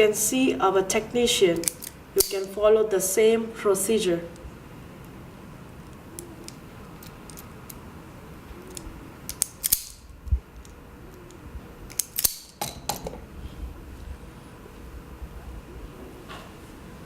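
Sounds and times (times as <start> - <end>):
scissors snipping wire: 1.6 - 2.6, 8.6 - 10.0, 10.6 - 13.0.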